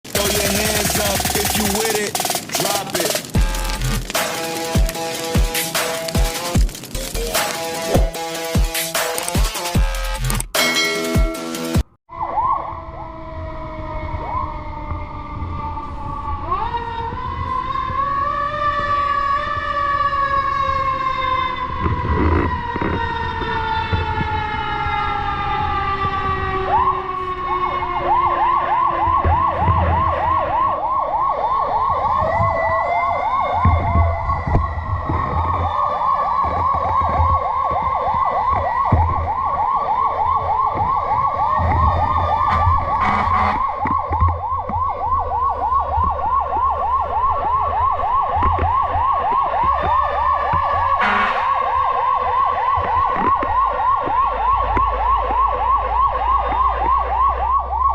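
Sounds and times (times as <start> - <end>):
engine and road rumble: 0.0 - 10.6, 11.6 - 57.9
fire truck siren: 0.1 - 57.9
second siren: 12.1 - 57.9.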